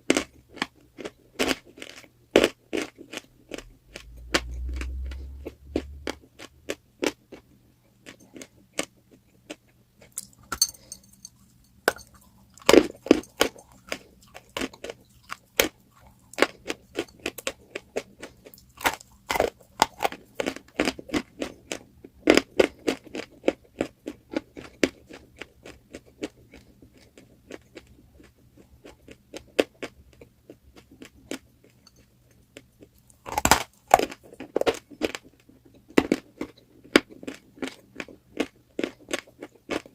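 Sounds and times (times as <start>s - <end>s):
chalk being chewed crunching: 9.5s - 39.9s.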